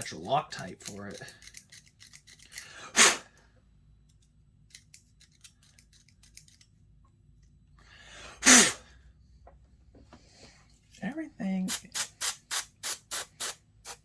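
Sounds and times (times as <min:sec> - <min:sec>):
short hissing blasts: 0:02.9 - 0:03.3, 0:08.4 - 0:08.9, 0:11.7 - 0:14.0.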